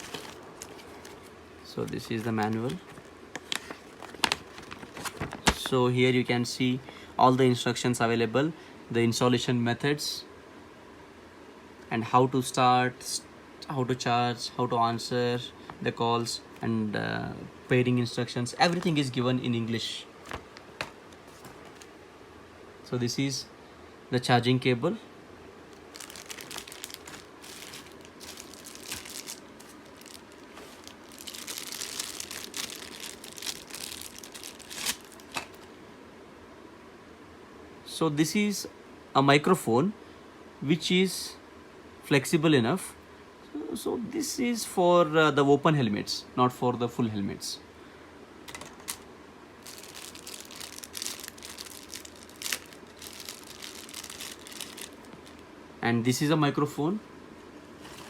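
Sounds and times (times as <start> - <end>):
plastic packaging crinkling: 0.0 - 5.8, 18.6 - 19.2, 20.2 - 21.9, 25.7 - 35.7, 48.5 - 55.4, 57.8 - 58.0.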